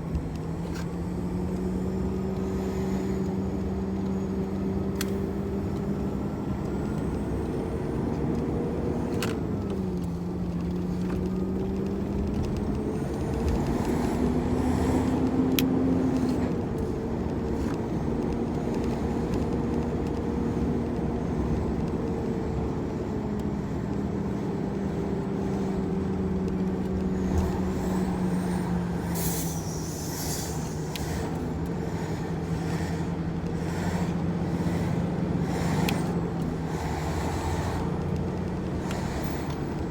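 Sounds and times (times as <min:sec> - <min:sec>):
truck diesel engine running: 0:23.2 - 0:39.9
air hiss: 0:27.8 - 0:31.4.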